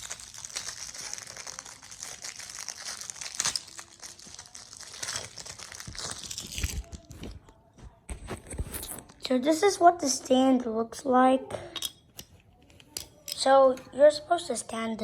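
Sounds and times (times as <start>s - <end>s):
packaging crinkling and rustling: 0.0s - 8.8s.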